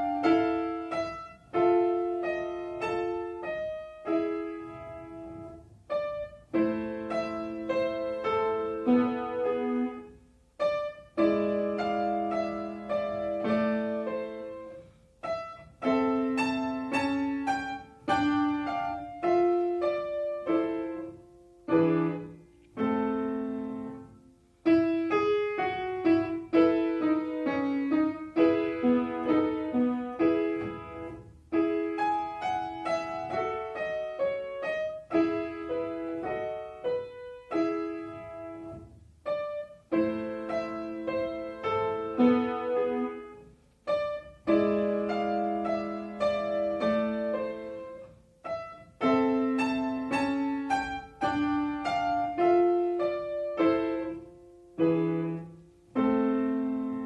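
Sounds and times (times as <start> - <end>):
solo piano playing: 0.0 - 57.0.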